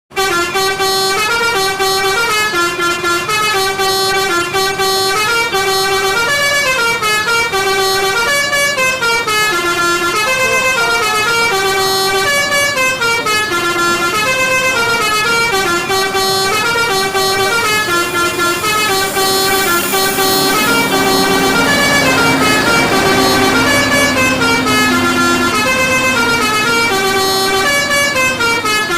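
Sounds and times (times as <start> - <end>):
multi-tone bus horn melody: 0.1 - 28.9
low steady tone: 1.0 - 28.9
rushing noise: 2.8 - 28.9.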